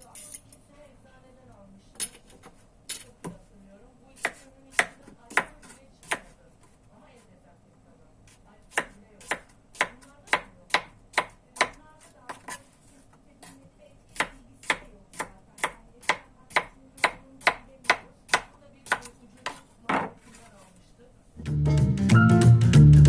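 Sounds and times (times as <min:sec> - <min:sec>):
knife chopping on cutting board: 0:04.2 - 0:06.8, 0:08.3 - 0:12.7, 0:13.4 - 0:20.4
background music: 0:21.4 - 0:23.0.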